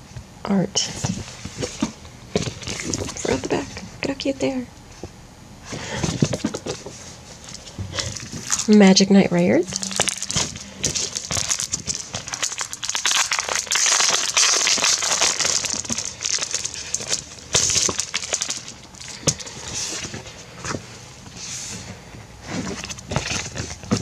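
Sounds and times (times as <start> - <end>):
thin plastic crinkling: 1.0 - 3.8, 5.7 - 9.0, 9.6 - 24.0.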